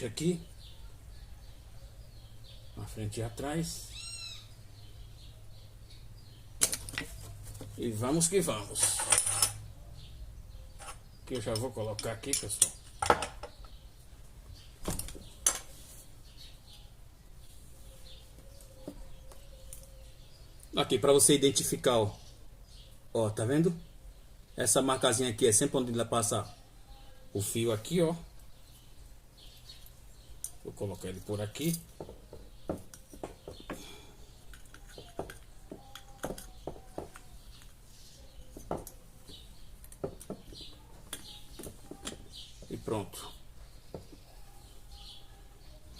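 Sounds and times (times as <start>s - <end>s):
metal parts clinking: 8.6s - 9.6s
small parts clicking and knocking: 31.2s - 37.8s, 38.5s - 42.7s.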